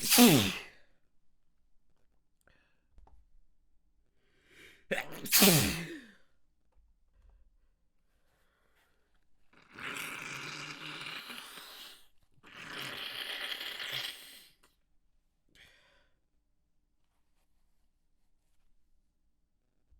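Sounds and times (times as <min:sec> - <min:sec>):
person blowing nose: 0:00.0 - 0:00.7, 0:05.0 - 0:06.0.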